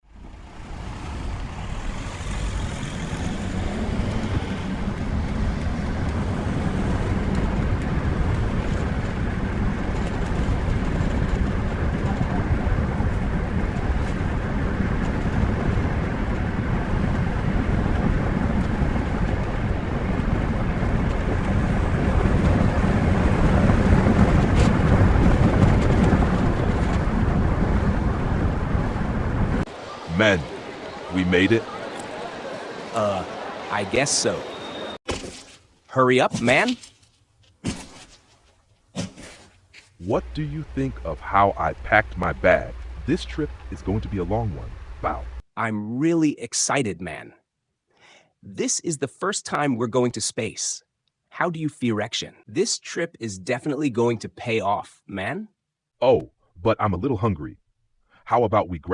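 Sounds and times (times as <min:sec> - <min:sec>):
steady rumbling vehicle noise: 0:00.0 - 0:34.6, 0:35.5 - 0:45.5.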